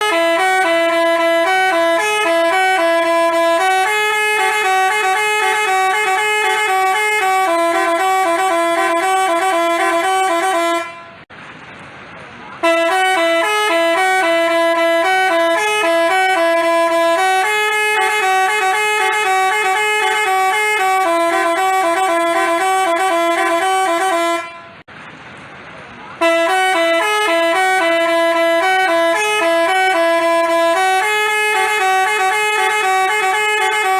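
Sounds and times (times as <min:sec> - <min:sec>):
multi-tone bus horn melody: 0:00.0 - 0:11.3, 0:12.6 - 0:24.9, 0:26.2 - 0:33.9.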